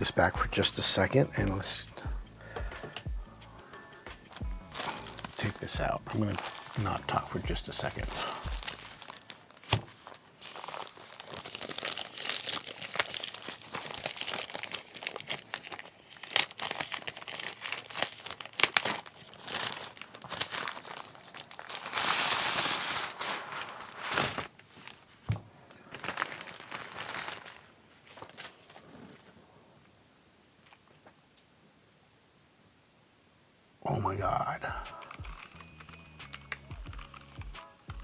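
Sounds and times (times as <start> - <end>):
plastic packaging crinkling: 2.5 - 29.3, 34.9 - 38.0.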